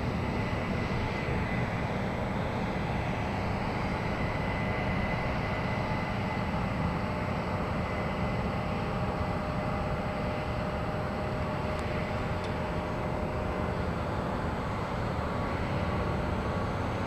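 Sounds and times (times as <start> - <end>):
faint steady whine: 0.0 - 17.0.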